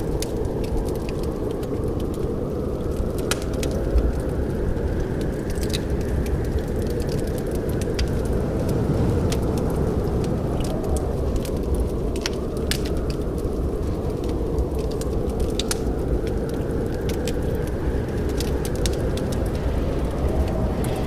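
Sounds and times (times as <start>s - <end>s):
wood fire crackling: 0.0s - 21.0s.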